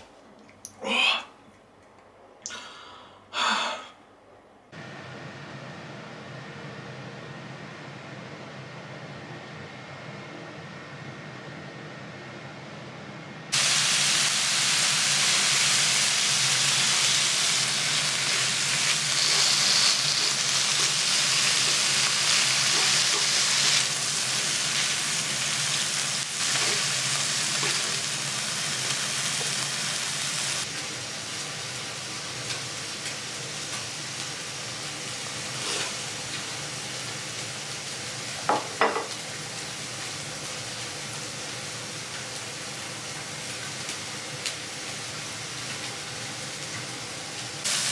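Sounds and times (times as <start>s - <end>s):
meat sizzling on a griddle: 13.6s - 47.9s.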